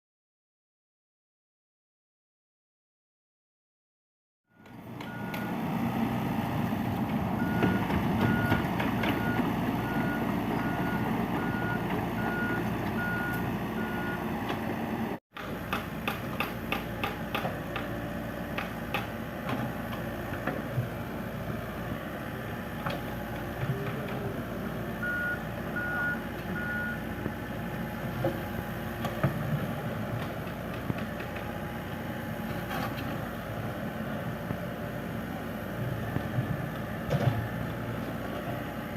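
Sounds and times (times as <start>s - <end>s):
excavator engine running: 4.5s - 38.9s
travel alarm beeping: 9.2s - 14.2s, 25.0s - 27.0s.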